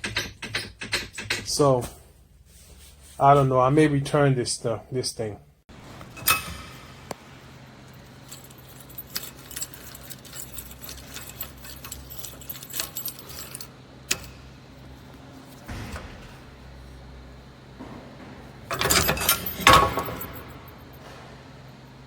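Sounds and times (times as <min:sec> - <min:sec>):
steady low hum: 0:01.4 - 0:22.0
bike rack rattling: 0:17.8 - 0:20.9.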